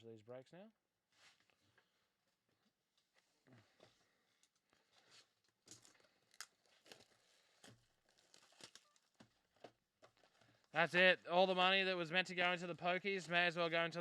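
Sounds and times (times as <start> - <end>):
packaging tearing and crinkling: 5.6 - 10.4.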